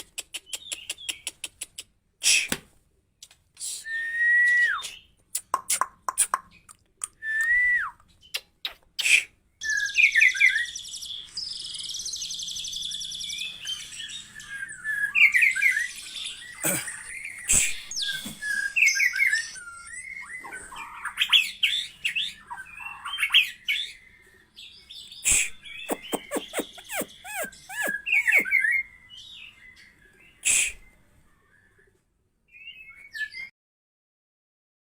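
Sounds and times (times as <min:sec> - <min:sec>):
bird singing whistles and trills: 0:03.6 - 0:05.2, 0:07.2 - 0:31.9, 0:32.5 - 0:33.5.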